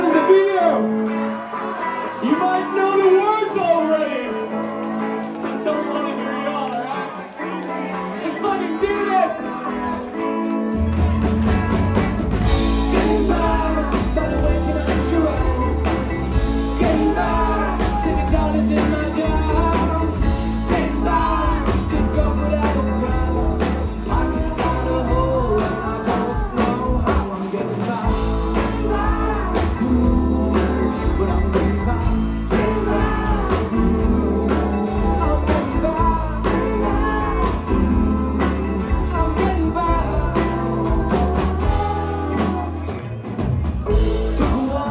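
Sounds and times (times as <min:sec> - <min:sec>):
live rock band playing: 0:00.0 - 0:44.9
lead vocal singing: 0:12.0 - 0:44.9.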